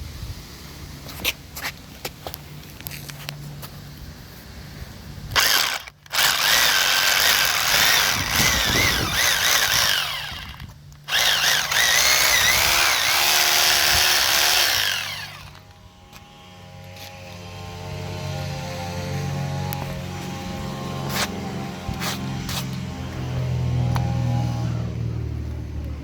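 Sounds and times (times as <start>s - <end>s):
electric drill boring into concrete: 5.3s - 16.3s.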